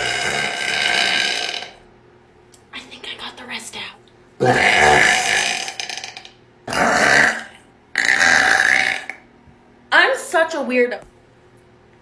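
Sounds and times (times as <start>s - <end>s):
woman burping loudly: 0.0s - 1.8s, 4.4s - 9.2s.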